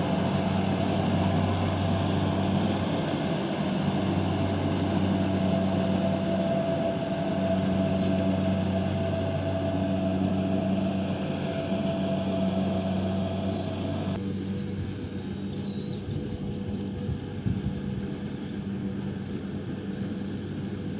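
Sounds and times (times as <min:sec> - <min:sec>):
harvesting machine engine humming: 0:00.0 - 0:14.8.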